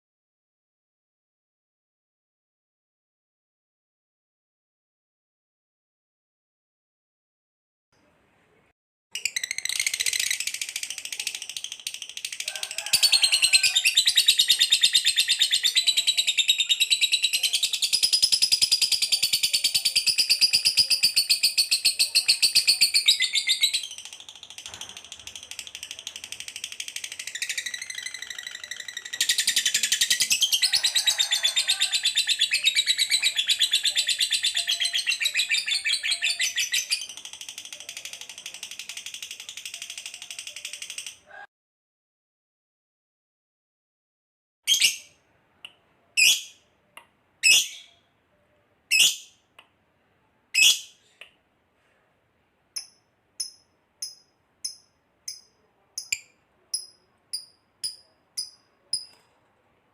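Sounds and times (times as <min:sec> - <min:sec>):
cage birds trilling and chattering: 0:09.2 - 0:41.4.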